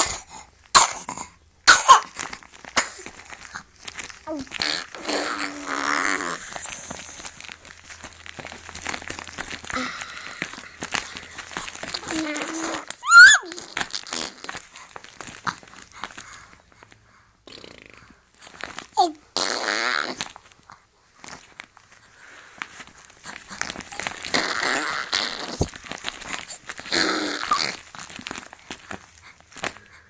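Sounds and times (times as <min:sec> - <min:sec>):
baby blowing raspberries: 0:00.0 - 0:07.8, 0:08.5 - 0:16.5, 0:17.2 - 0:20.4, 0:23.2 - 0:28.3
baby squeaking: 0:12.0 - 0:13.7, 0:26.9 - 0:27.8.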